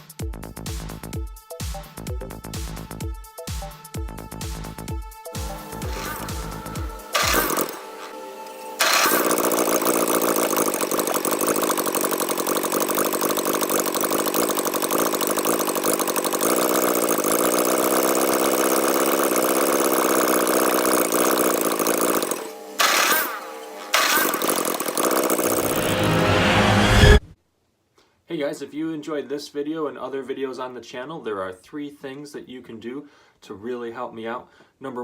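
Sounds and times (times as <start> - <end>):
tractor engine running: 5.4 - 27.2.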